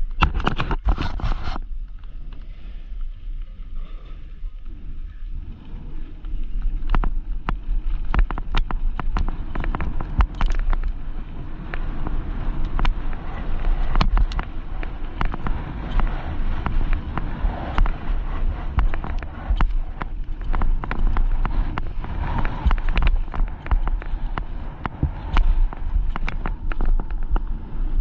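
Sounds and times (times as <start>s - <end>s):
wind rumbling on microphone: 0.0s - 28.0s
bike clacking and rattling: 6.5s - 28.0s.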